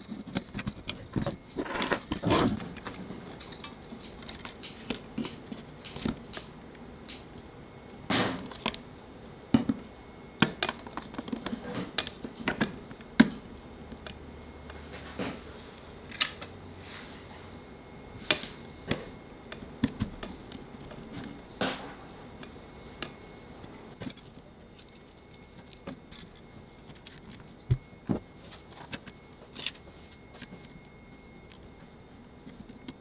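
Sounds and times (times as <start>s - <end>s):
small hard parts clicking: 0.0s - 7.4s
faint high whine: 6.6s - 33.0s.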